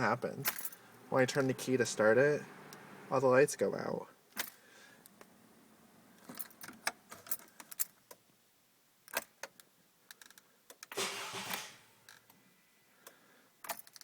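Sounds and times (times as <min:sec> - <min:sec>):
car keys jangling: 0:06.2 - 0:08.0.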